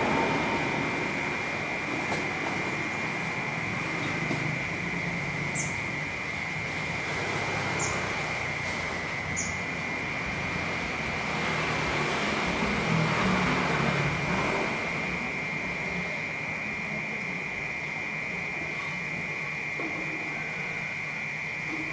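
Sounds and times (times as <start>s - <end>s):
cicadas droning: 0.0s - 21.9s
rumble of city traffic: 0.0s - 21.9s.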